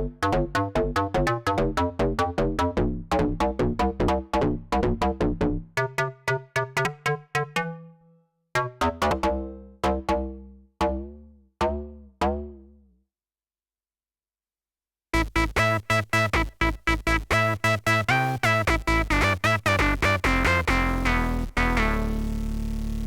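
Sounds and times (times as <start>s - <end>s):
deep synth bass: 0.0s - 5.8s, 8.9s - 12.9s, 15.2s - 23.0s
synthesizer pitch-bending notes: 0.0s - 8.0s, 15.2s - 23.0s
synthesizer plucked notes: 0.0s - 12.9s, 15.2s - 23.0s.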